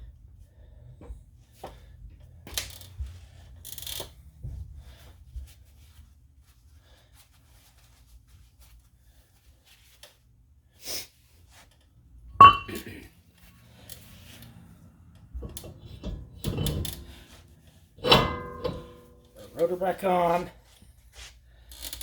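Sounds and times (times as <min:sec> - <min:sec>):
soft metal knocks and rattles: 0:12.4 - 0:12.9, 0:15.2 - 0:19.8
metallic clank with ring: 0:12.4 - 0:13.0, 0:15.4 - 0:17.4, 0:18.0 - 0:19.4.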